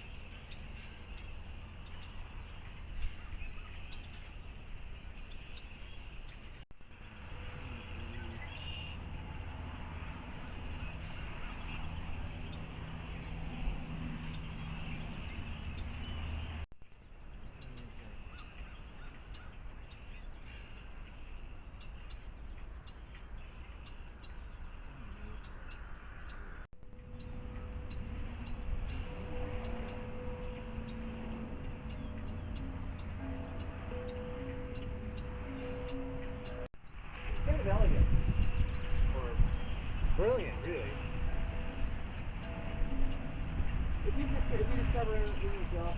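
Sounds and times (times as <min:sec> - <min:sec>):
wild birds chirping: 0:00.0 - 0:45.9
low outdoor rumble: 0:06.4 - 0:20.6, 0:26.7 - 0:45.9.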